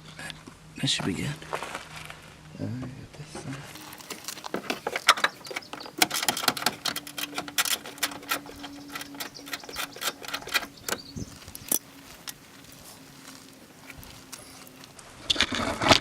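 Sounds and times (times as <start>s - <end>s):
hand tools clicking and rattling: 3.8s - 15.0s.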